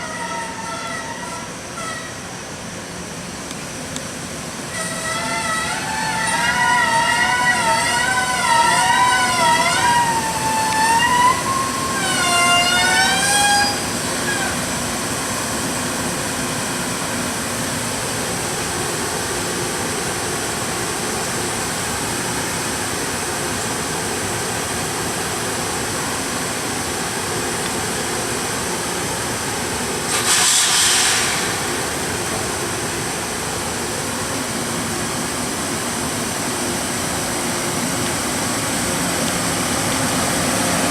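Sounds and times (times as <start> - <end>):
train brakes squealing: 0.0 - 2.4, 4.7 - 14.8, 30.1 - 31.8
train running noise: 0.0 - 40.9
air hiss: 29.4 - 34.7.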